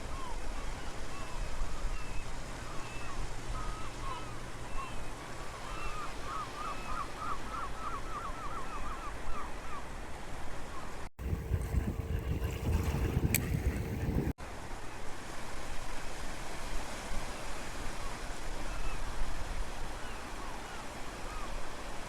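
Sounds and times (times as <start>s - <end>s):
sea surf washing on shore: 11.2s - 14.4s
wind buffeting microphone: 11.2s - 14.4s.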